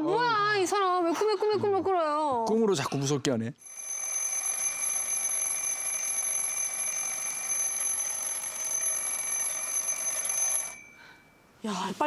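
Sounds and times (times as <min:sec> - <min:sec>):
alarm clock ringing: 0:03.6 - 0:11.4.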